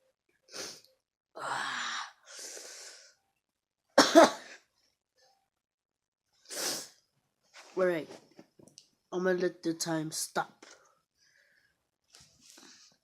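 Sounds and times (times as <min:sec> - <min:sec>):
person coughing: 0:04.0 - 0:04.6.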